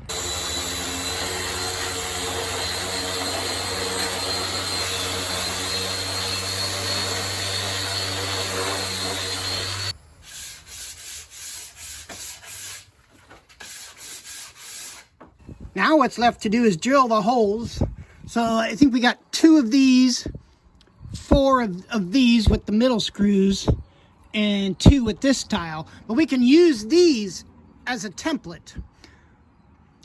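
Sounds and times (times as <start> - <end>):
woodworking machine humming and whining: 0.0 - 9.9
rubbing strokes: 10.3 - 12.9.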